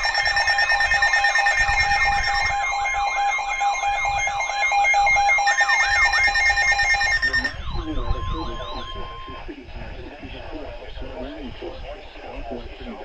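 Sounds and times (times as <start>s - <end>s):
electronic alarm tones: 0.0s - 9.5s
warbling alarm sweep: 0.0s - 9.5s.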